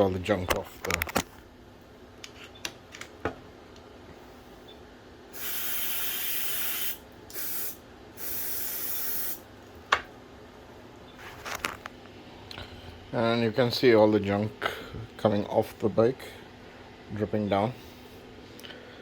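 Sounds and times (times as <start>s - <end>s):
aerosol can spraying: 5.4s - 9.4s.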